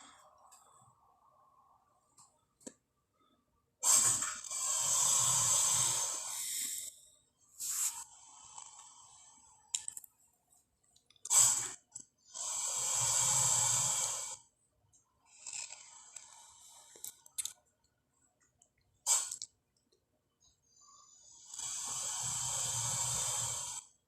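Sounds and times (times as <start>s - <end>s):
creature hissing breaths: 3.8s - 7.0s.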